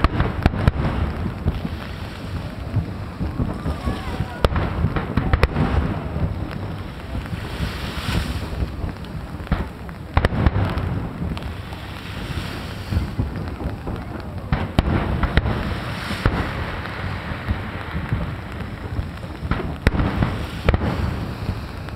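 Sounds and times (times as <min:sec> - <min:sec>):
fireworks bangs: 0:00.0 - 0:21.9
fireworks crackling: 0:00.0 - 0:21.9
wind buffeting microphone: 0:00.0 - 0:21.9.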